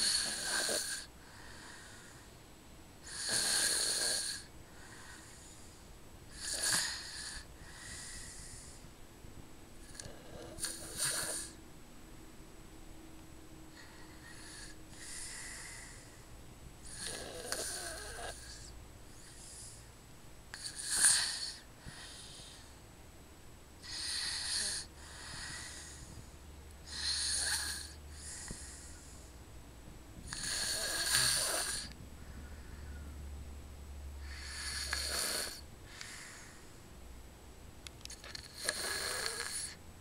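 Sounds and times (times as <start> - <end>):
loud airy snoring: 0.0 - 2.3, 3.0 - 5.5, 6.3 - 8.8, 9.8 - 11.6, 13.7 - 16.2, 16.8 - 19.8, 20.5 - 22.7, 23.8 - 26.2, 26.8 - 29.2, 30.2 - 32.0, 34.2 - 36.7, 38.2 - 39.8
faint breath: 1.0 - 2.4, 4.4 - 9.0, 13.6 - 17.0, 18.2 - 20.0, 20.6 - 22.8, 23.8 - 29.6, 30.2 - 33.3, 34.1 - 37.0.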